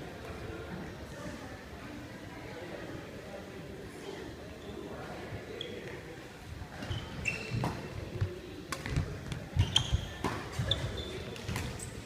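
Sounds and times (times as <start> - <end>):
shoes squeaking on court: 6.8 - 12.0.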